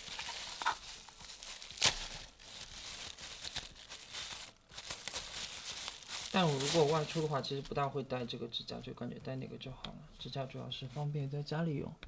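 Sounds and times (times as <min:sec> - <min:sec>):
packaging crinkling and rustling: 0:00.0 - 0:07.8.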